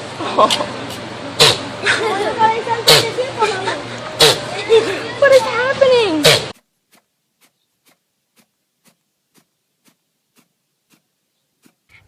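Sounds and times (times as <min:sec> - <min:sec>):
faint regular ticks: 0:06.6 - 0:12.0.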